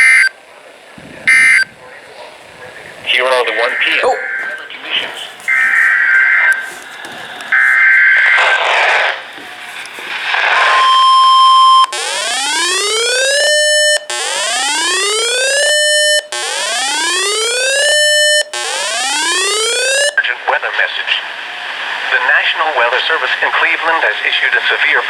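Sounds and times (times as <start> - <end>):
screechy data bursts: 0.0 - 0.3, 1.3 - 1.7, 3.0 - 12.2
steady warning tone: 0.0 - 21.0
rising whoop alarm tones: 3.4 - 4.7, 10.6 - 20.1.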